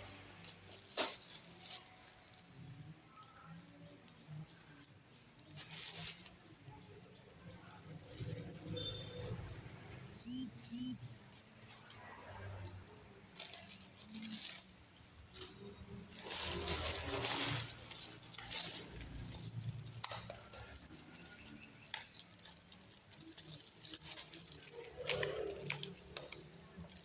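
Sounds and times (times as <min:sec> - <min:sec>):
loud rustle: 0:16.1 - 0:19.7.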